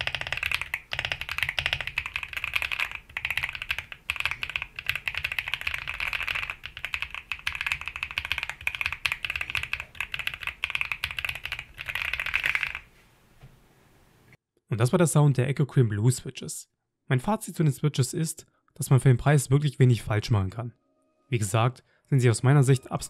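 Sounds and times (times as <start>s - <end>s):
mechanical keyboard typing: 0.0s - 12.9s.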